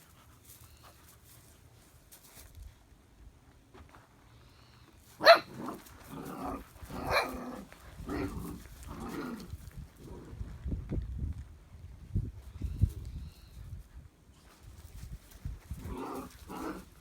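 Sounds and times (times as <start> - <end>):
puppies barking: 5.2 - 5.8, 6.5 - 9.1.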